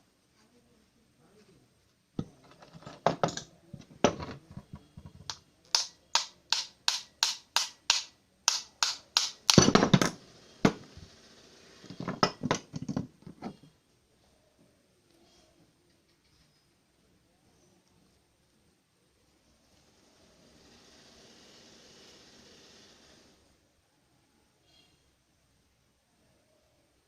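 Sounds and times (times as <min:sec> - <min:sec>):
tool tapping on metal: 0:02.2 - 0:10.9, 0:12.0 - 0:13.5.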